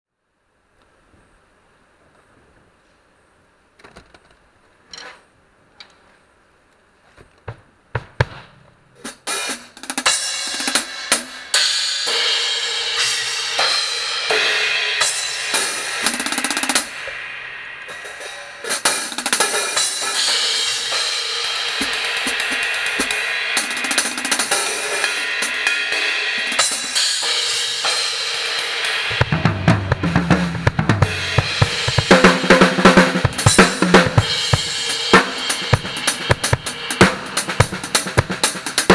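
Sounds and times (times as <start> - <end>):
heavy bass drum: 7.5 - 8.5, 14.3 - 27.8, 29.0 - 38.9
drum kit with cymbals: 8.0 - 38.9.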